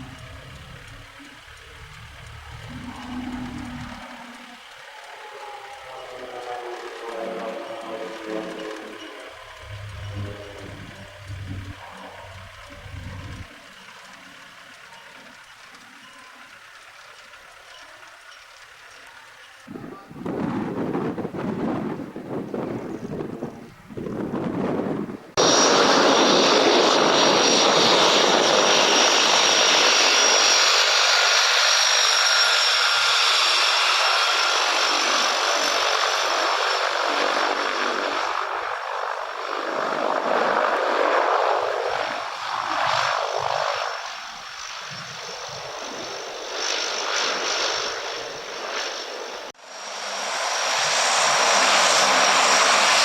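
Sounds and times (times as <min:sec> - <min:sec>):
aircraft engine noise: 0:00.0 - 0:53.0
wind buffeting microphone: 0:19.7 - 0:30.4.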